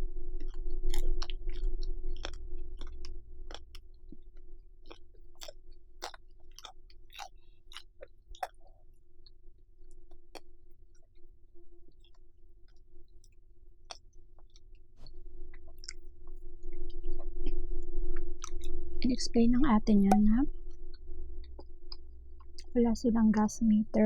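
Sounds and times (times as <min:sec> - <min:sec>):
steady low hum: 0:00.0 - 0:07.9, 0:08.6 - 0:24.0
close chewing of food: 0:00.4 - 0:11.3, 0:11.9 - 0:14.9, 0:15.5 - 0:16.4
wet mouth clicks and smacks: 0:04.8 - 0:08.8.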